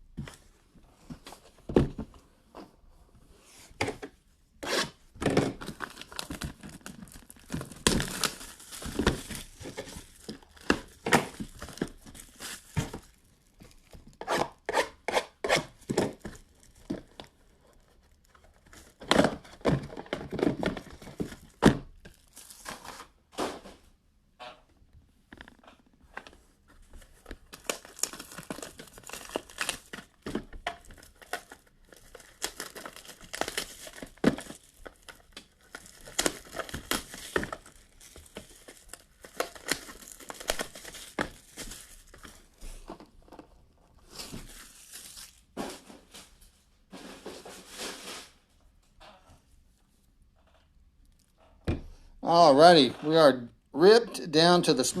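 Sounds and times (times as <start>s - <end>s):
plastic wrapping tearing and crinkling: 5.3s - 14.7s, 15.7s - 23.2s, 26.9s - 42.9s, 44.0s - 46.4s.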